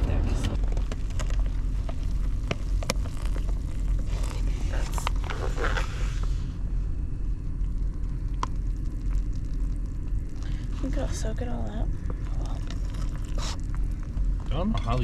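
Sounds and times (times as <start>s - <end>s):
steady low rumble: 0.0s - 15.0s
food pouch crinkling: 0.8s - 6.0s.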